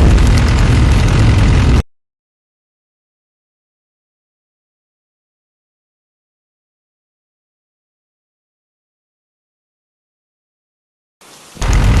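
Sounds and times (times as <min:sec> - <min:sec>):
loud rumbling wind: 0:00.0 - 0:01.8, 0:11.6 - 0:12.0.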